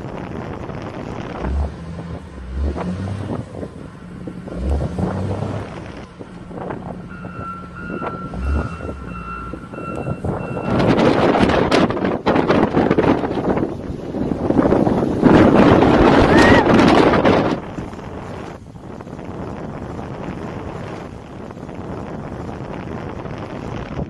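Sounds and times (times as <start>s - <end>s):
street traffic: 0.0s - 24.0s
wind buffeting microphone: 0.0s - 24.0s
vehicle reversing beeper: 7.0s - 11.2s.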